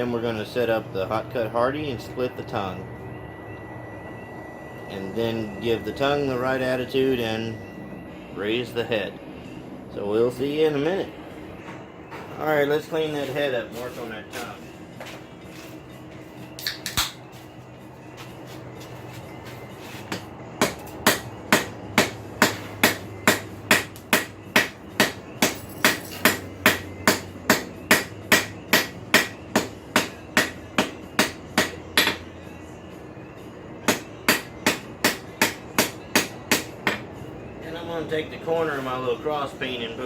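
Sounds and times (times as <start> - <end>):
low steady hum: 0.0 - 40.0
hammer striking steel on anvil: 20.1 - 32.2, 33.9 - 37.0.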